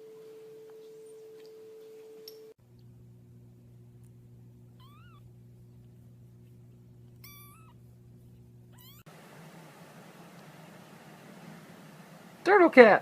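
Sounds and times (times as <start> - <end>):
faint low hum: 0.0 - 13.0
cat meowing: 4.8 - 5.2, 7.2 - 7.8, 8.7 - 9.1.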